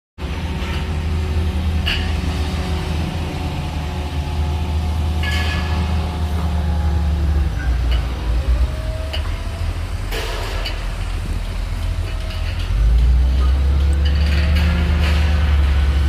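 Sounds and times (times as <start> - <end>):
diesel bulldozer rumbling: 0.2 - 16.0.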